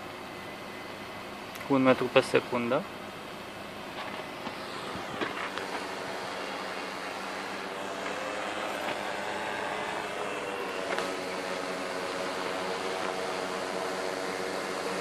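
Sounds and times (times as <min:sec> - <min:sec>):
drone propellers humming: 0:03.1 - 0:15.0.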